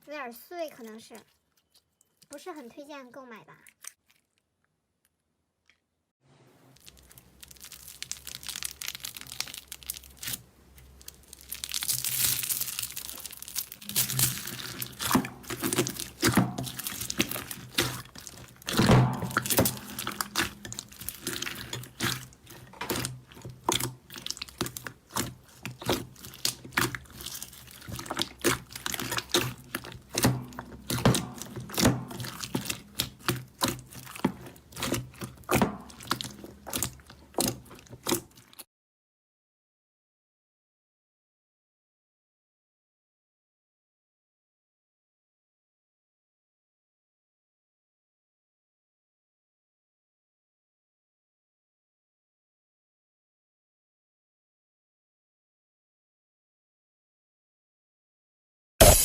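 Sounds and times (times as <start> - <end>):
slime crackling and popping: 6.7 - 38.6.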